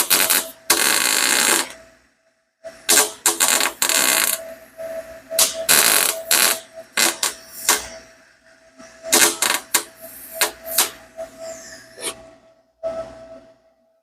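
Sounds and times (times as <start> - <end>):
welder crackling arc bursts: 0.0 - 1.8, 2.9 - 4.4, 5.4 - 7.8, 9.1 - 11.0
faint steady tone: 0.2 - 14.0.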